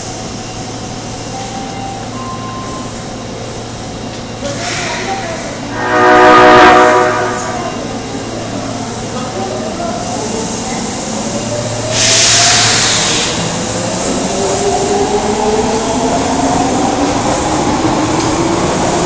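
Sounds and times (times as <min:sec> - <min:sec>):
train and station background noise: 0:00.0 - 0:19.0
train horn blast: 0:05.7 - 0:07.8.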